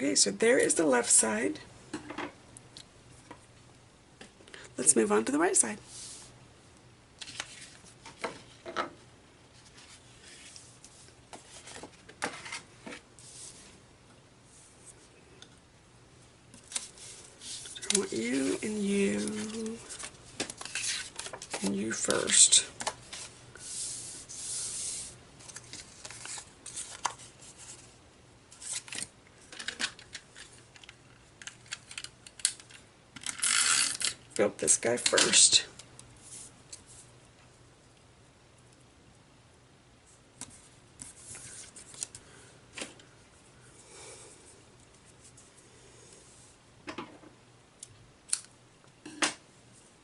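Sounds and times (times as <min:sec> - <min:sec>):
paper sliding hiss: 0:05.8 - 0:06.3, 0:23.0 - 0:28.0
paper rustling: 0:16.6 - 0:30.6.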